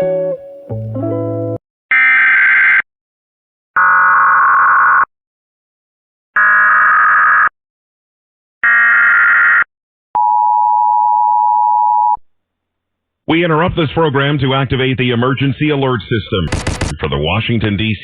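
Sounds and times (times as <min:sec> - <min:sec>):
buzzy digital data bursts: 0:16.5 - 0:17.0.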